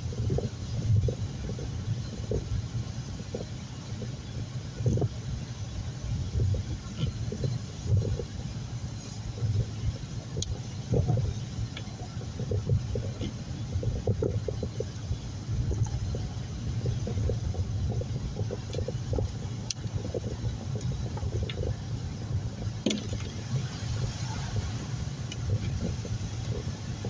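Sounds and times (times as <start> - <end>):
car driving rumble from inside: 0.0 - 27.0
faint ticks and taps: 9.3 - 15.0, 15.6 - 21.8.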